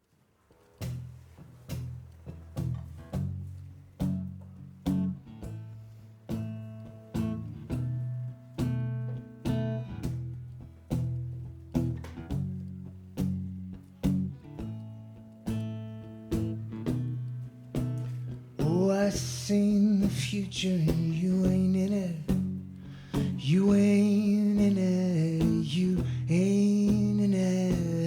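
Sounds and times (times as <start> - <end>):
acoustic guitar chords: 1.8 - 28.0.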